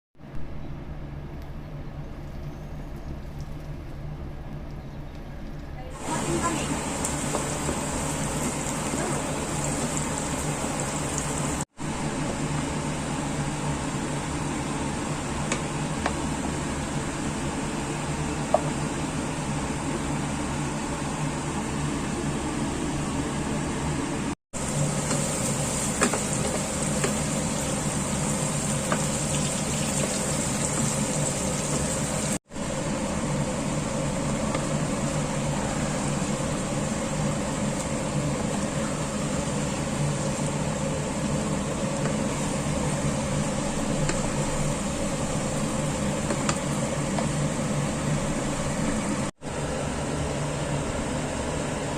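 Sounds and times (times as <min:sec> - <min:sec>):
mechanical hum with hiss: 0:00.2 - 0:51.9.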